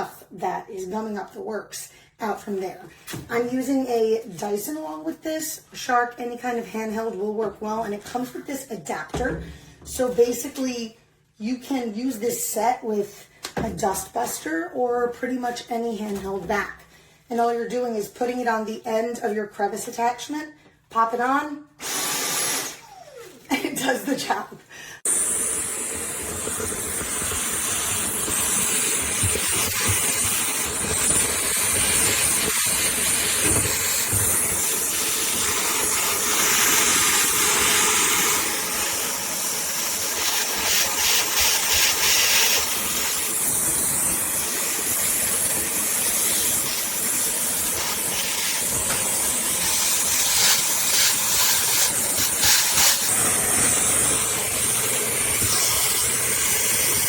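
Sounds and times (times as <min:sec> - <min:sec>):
vacuum airflow hiss: 0:25.0 - 0:57.0.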